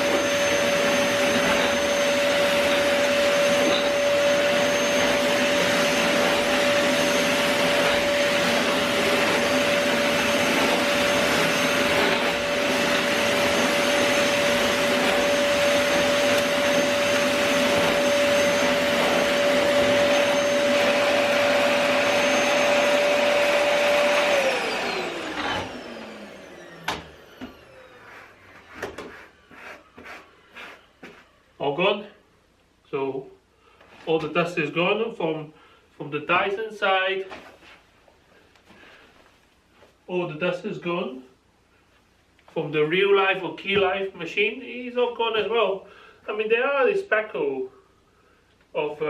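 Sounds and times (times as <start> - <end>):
vacuum cleaner motor whine: 0.0 - 31.4.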